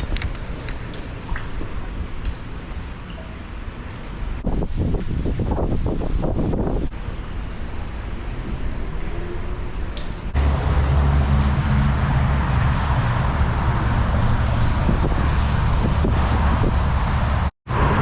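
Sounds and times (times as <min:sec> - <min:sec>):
low engine hum: 0:00.0 - 0:18.0
wind on microphone: 0:04.4 - 0:07.0, 0:11.6 - 0:18.0.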